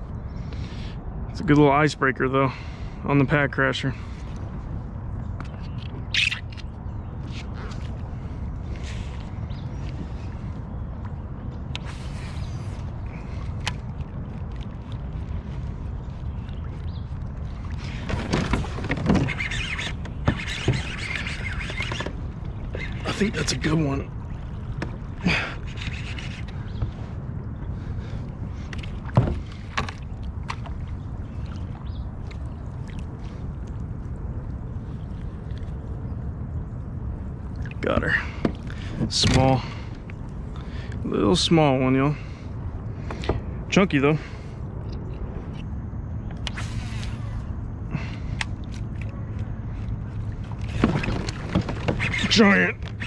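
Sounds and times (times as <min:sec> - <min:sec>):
steady low hum: 0:00.0 - 0:53.0
wind and water rumble: 0:00.0 - 0:53.0
clicks and knocks from fishing gear: 0:05.4 - 0:08.0, 0:13.3 - 0:15.4, 0:16.1 - 0:23.4, 0:24.6 - 0:27.0, 0:28.6 - 0:33.8, 0:48.2 - 0:53.0
water splashes: 0:11.6 - 0:27.2, 0:27.8 - 0:36.4, 0:46.4 - 0:53.0.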